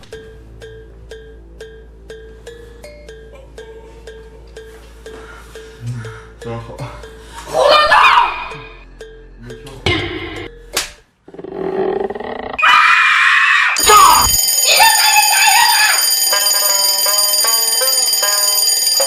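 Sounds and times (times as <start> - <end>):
alarm clock clicks: 0.0 - 3.2, 13.8 - 19.0
beeping melody: 0.0 - 7.6, 8.2 - 10.8, 14.1 - 19.0
alarm clocks ringing: 0.0 - 10.7, 13.8 - 19.0.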